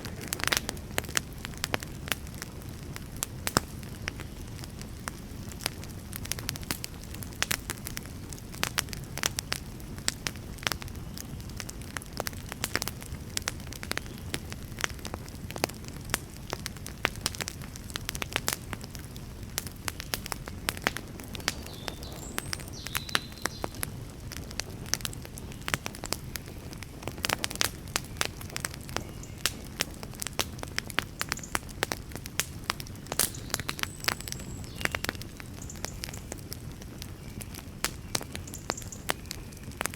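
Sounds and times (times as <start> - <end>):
fire crackling and popping: 0.0 - 39.9
low rumble of flame: 0.0 - 39.9.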